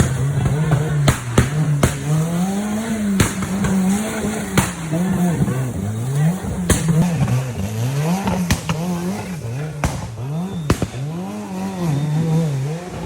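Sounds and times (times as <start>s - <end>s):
sharp knocks: 0.0s - 2.3s, 3.0s - 5.0s
race car engine revving: 0.0s - 13.0s.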